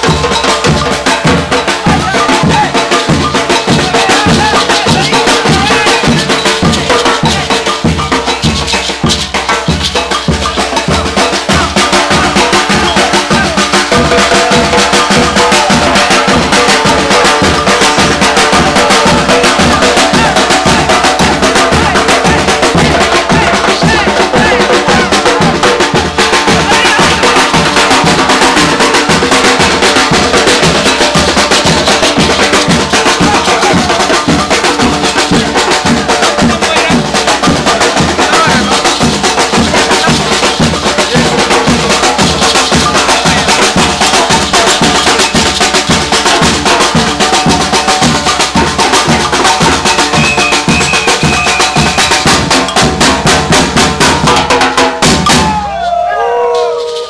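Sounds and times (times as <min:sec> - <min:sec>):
drum ensemble playing fast rhythm: 0:00.0 - 0:57.0
sharp high percussion: 0:00.0 - 0:57.0.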